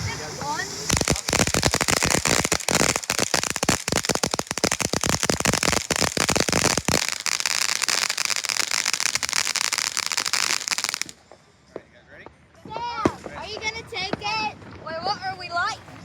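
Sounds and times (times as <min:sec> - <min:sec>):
high-pitched firework crackle: 0:00.0 - 0:11.3
firework pops and bangs: 0:00.0 - 0:11.9, 0:12.7 - 0:14.5.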